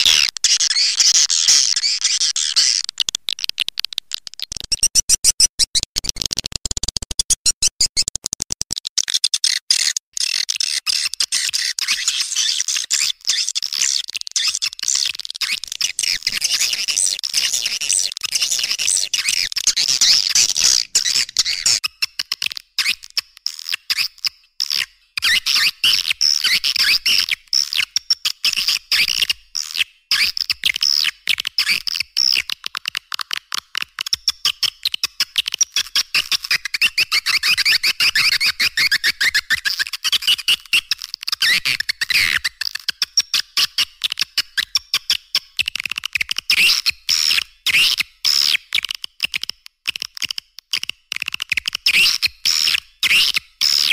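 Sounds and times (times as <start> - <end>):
high-pitched twittering chirps: 0.0 - 5.8.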